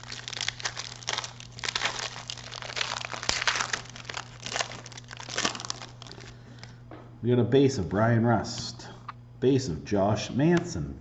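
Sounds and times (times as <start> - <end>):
cards and wrappers crinkling: 0.0 - 6.7
steady low hum: 0.0 - 11.0.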